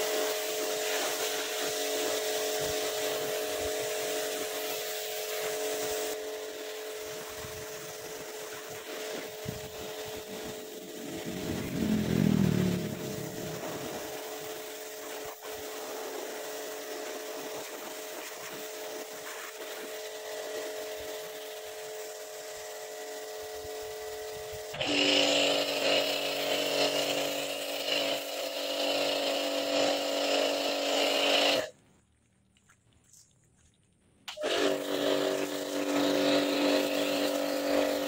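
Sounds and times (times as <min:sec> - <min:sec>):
electric motor humming: 0:05.3 - 0:14.5, 0:23.3 - 0:31.7, 0:34.3 - 0:38.0.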